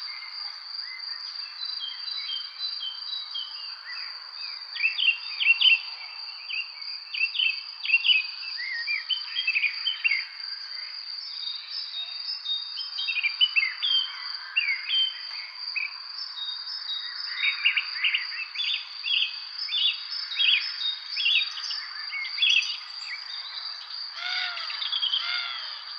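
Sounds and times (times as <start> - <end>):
songbirds chirping: 0.0 - 25.9.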